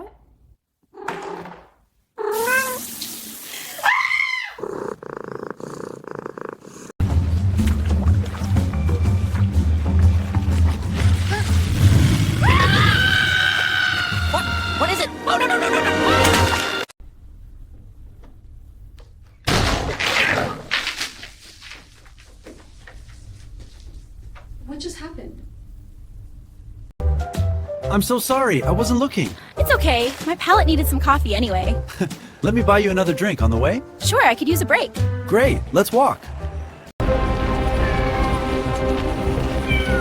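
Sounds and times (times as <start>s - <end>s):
cat meowing: 2.2s - 2.9s, 39.5s - 40.0s.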